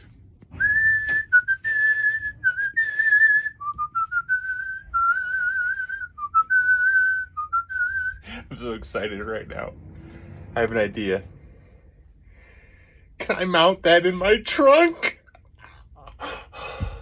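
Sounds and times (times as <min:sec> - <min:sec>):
person whistling a tune: 0:00.6 - 0:08.2.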